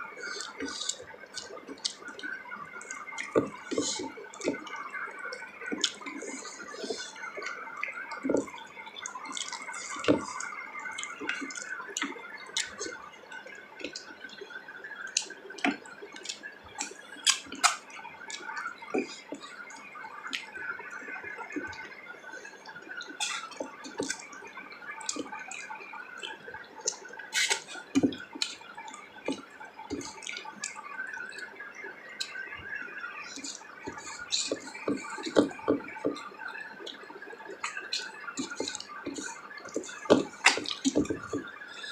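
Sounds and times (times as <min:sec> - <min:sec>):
wet chewing: 0:15.1 - 0:19.5, 0:23.2 - 0:24.3, 0:25.1 - 0:25.4, 0:26.8 - 0:28.6, 0:37.5 - 0:41.9
lip smacks: 0:15.1 - 0:19.6, 0:23.0 - 0:24.3, 0:25.1 - 0:25.7, 0:26.8 - 0:30.8, 0:36.9 - 0:41.9.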